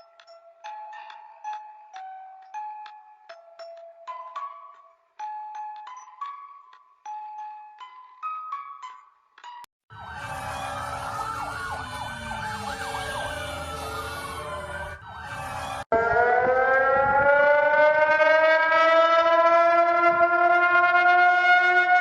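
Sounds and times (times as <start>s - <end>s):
siren winding up: 9.9s - 18.2s
sirens sweeping up and down: 9.9s - 22.0s.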